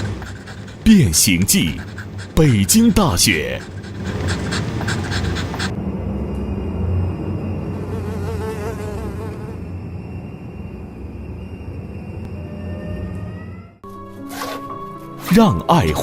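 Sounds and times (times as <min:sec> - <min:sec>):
insect buzzing drone: 0:03.6 - 0:15.2.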